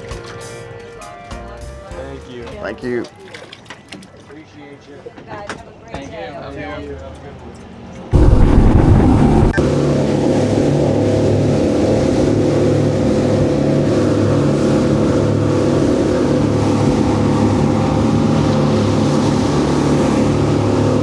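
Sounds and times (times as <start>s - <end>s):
wind: 0.0s - 21.0s
motorboat engine running: 8.2s - 21.0s
water rushing: 8.2s - 21.0s.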